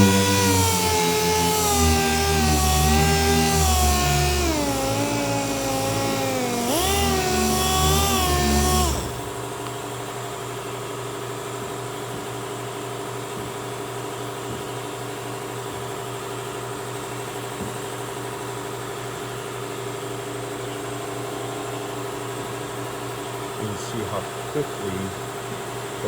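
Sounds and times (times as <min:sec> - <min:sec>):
motor humming: 0:00.0 - 0:09.7.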